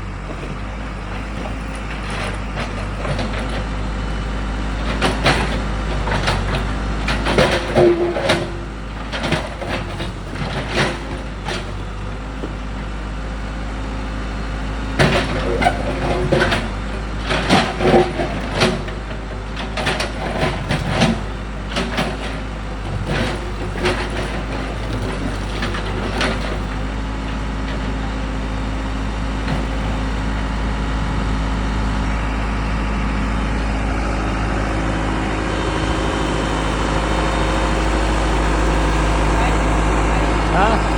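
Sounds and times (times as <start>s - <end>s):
diesel engine under load: 0.0s - 40.9s
bucket clanking on broken concrete: 4.9s - 11.8s, 15.0s - 26.9s.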